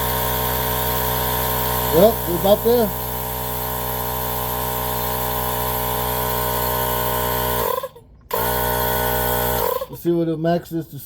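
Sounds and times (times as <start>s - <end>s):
tire inflator motor humming: 0.0s - 10.0s.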